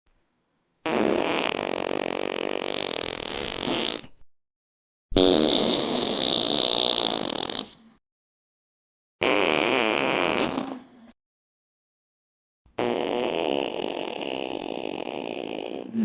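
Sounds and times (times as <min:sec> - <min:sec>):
rattling fart sound effects: 0:00.8 - 0:04.2, 0:05.2 - 0:07.8, 0:09.2 - 0:10.9, 0:12.7 - 0:16.0.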